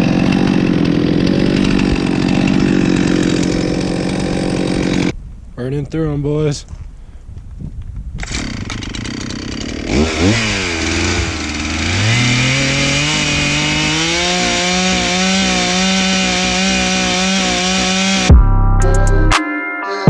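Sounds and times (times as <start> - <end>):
chainsaw cutting logs: 0.0 - 5.2, 8.2 - 18.3.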